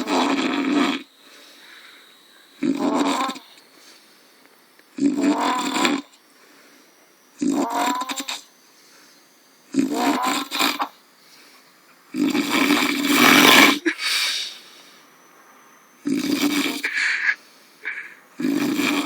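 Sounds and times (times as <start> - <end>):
man snoring loudly: 0.0 - 1.1, 2.6 - 3.6, 5.0 - 6.2, 7.4 - 8.5, 9.7 - 11.0, 12.1 - 13.9, 16.0 - 19.0.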